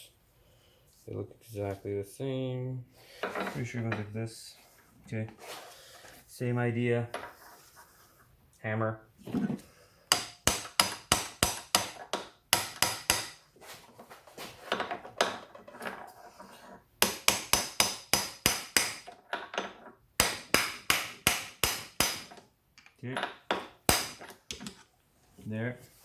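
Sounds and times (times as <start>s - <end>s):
hammer striking metal: 10.1s - 13.4s, 17.0s - 19.0s, 20.2s - 22.3s, 23.5s - 24.2s.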